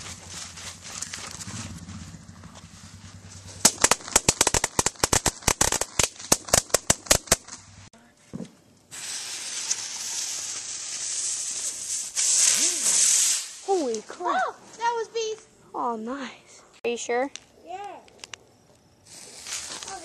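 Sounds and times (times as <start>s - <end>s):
firecrackers popping: 3.4s - 7.8s, 8.9s - 14.2s, 19.1s - 20.0s
steady hiss: 8.8s - 17.1s, 19.0s - 20.0s.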